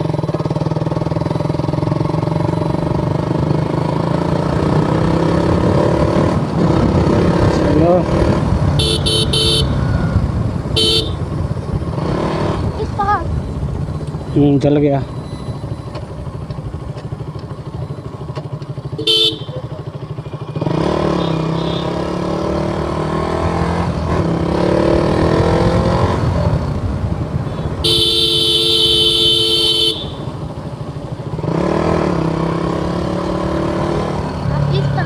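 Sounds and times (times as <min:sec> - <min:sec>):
motorcycle engine accelerating: 0:00.0 - 0:35.0
short horn toot: 0:08.8 - 0:10.1, 0:19.0 - 0:19.7, 0:27.6 - 0:30.3
steady horn blast: 0:08.8 - 0:11.3, 0:19.0 - 0:19.7, 0:27.5 - 0:30.4.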